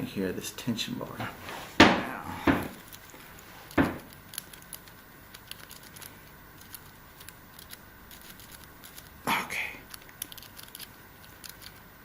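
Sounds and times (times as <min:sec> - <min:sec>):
lock pick ticks and scratches: 0:02.6 - 0:09.2, 0:09.8 - 0:11.9.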